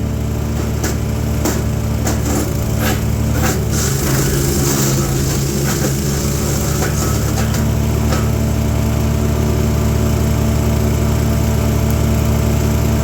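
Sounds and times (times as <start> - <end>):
wood chipper engine running: 0.0 - 13.0
wood cracking as chipped: 0.7 - 8.5.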